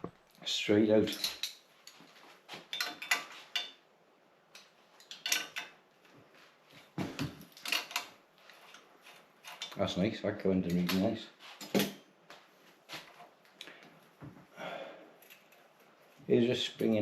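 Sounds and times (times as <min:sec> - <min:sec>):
metal parts clinking and rattling: 0:01.0 - 0:02.0, 0:02.7 - 0:03.8, 0:04.5 - 0:05.8, 0:07.2 - 0:09.9.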